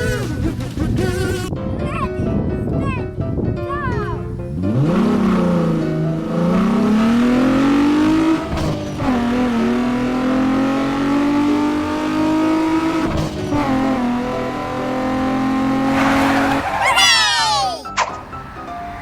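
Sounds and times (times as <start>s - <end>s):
car engine revving: 4.5s - 17.0s.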